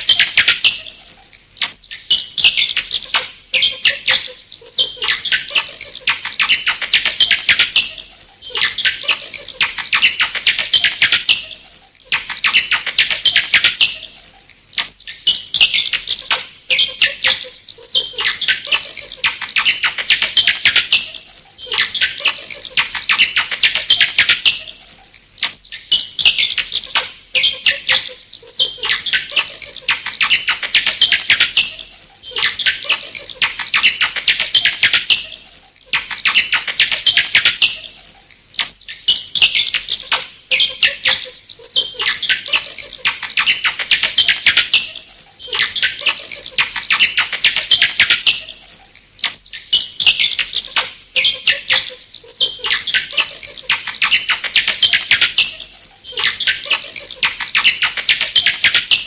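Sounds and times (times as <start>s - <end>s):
bats chittering and squeaking: 0.0s - 59.0s.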